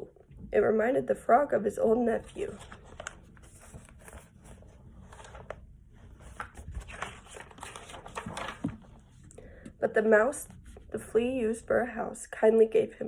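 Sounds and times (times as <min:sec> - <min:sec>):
paper page turning: 0:02.1 - 0:09.3.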